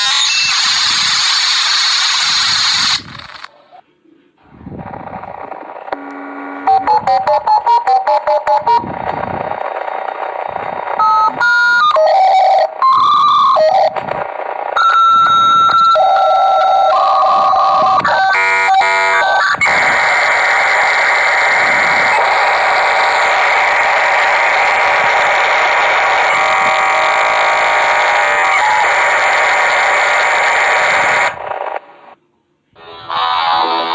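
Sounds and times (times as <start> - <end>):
modem beeping and warbling tones: 0.0 - 1.3, 4.8 - 23.9, 24.6 - 29.4
loud static hiss: 0.0 - 12.0, 12.6 - 16.0, 17.4 - 33.9.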